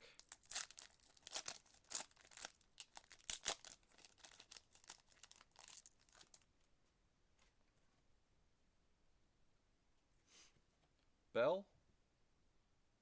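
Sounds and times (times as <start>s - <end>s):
wrapper tearing and crinkling: 0.2s - 6.4s.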